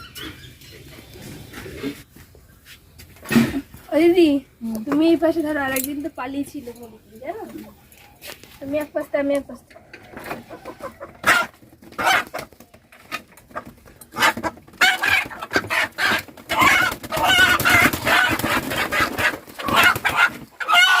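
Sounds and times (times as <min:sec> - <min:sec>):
rooster squawking and clucking: 0:09.7 - 0:12.5, 0:13.1 - 0:21.0.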